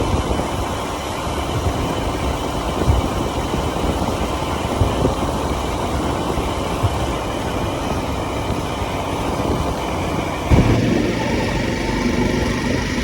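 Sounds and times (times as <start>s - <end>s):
road noise: 5.2s - 13.0s
motorcycle engine rumbling: 7.0s - 13.0s
brief low thumps: 10.5s - 12.8s.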